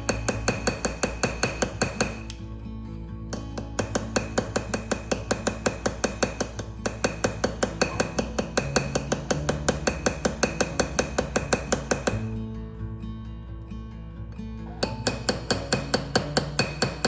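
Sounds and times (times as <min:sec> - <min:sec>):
small hammer tapping metal: 0:00.1 - 0:02.4, 0:03.3 - 0:12.2, 0:14.8 - 0:17.0.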